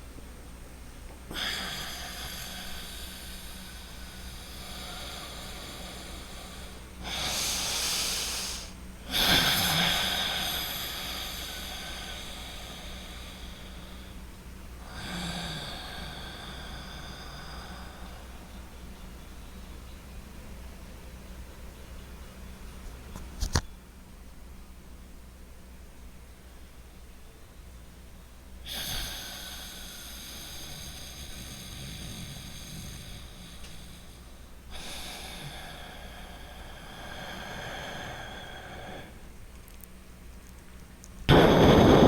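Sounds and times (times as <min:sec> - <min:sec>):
noisy breathing through nose: 0:01.3 - 0:19.5, 0:28.6 - 0:39.9, 0:40.8 - 0:42.0.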